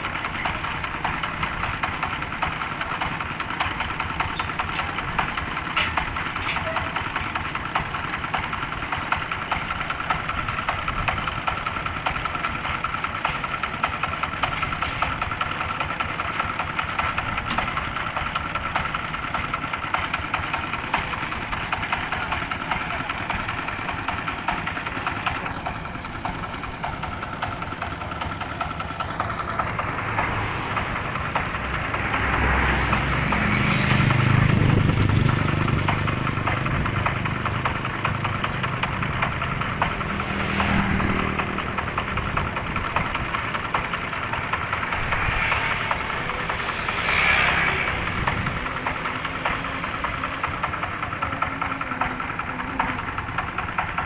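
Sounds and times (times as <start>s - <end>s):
diesel threshing machine running: 0.0s - 54.0s.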